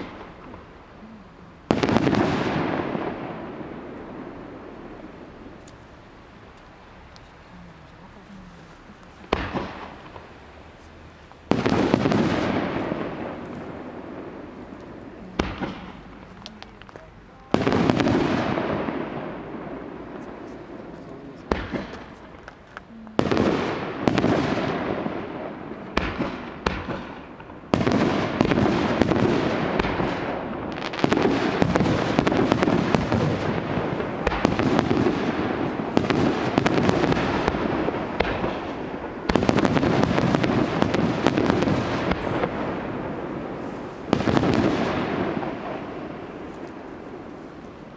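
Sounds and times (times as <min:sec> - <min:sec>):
fireworks bangs: 0:00.0 - 0:47.9
fireworks crackle: 0:00.0 - 0:47.9.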